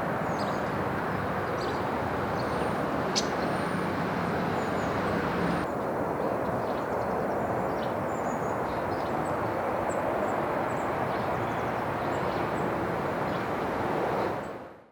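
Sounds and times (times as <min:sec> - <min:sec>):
outdoor background rush: 0:00.0 - 0:14.9
small birds chirping: 0:00.2 - 0:05.6.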